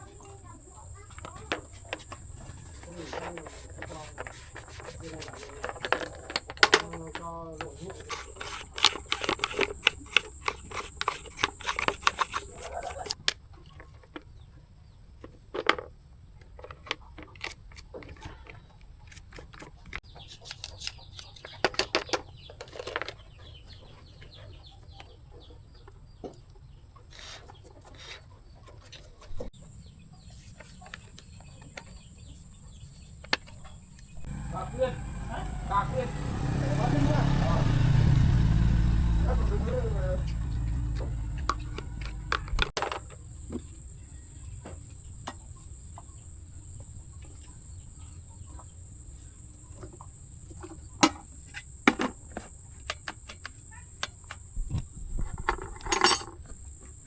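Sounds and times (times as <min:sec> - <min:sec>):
hands clicking and tapping kettle parts: 0:01.0 - 0:13.4, 0:51.8 - 0:54.4.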